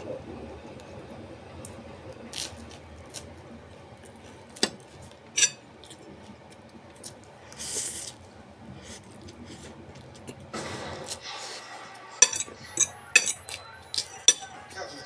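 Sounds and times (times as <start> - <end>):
utensil clinking against dish: 5.4 - 5.6, 12.2 - 14.8.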